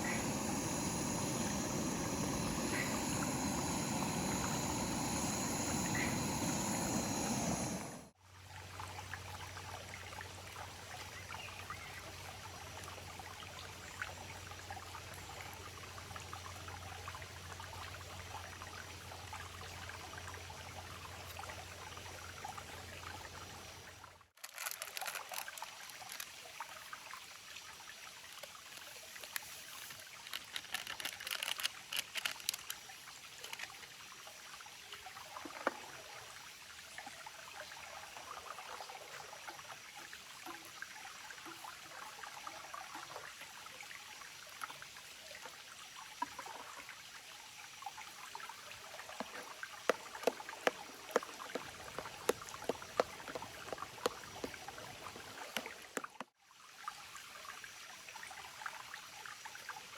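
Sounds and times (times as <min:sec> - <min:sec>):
water trickling in a stream: 0:00.0 - 0:59.9
sharp clicks and ticks: 0:49.2 - 0:56.3.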